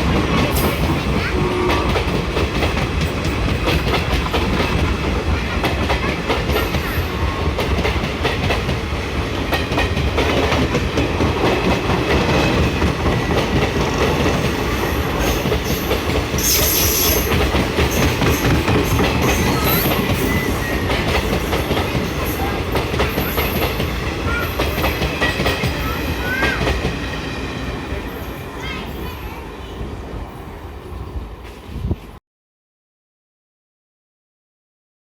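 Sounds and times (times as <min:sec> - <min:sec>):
train coaches rumbling: 0:00.0 - 0:32.2
high-pitched screech: 0:16.4 - 0:17.3.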